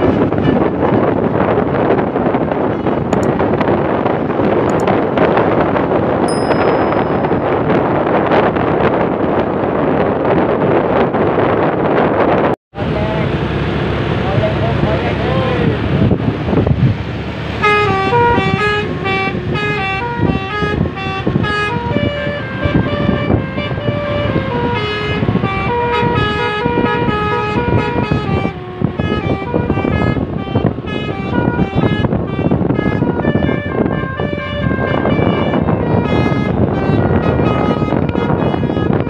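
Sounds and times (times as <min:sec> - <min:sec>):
multi-tone air horn melody: 0:06.3 - 0:07.9, 0:17.6 - 0:39.0.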